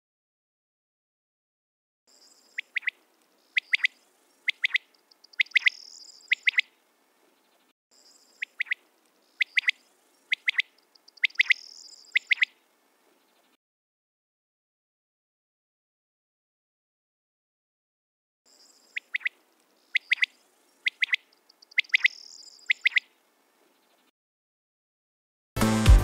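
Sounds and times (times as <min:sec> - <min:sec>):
corncrake rasping call: 0:02.5 - 0:06.7, 0:08.4 - 0:12.6, 0:18.7 - 0:23.1.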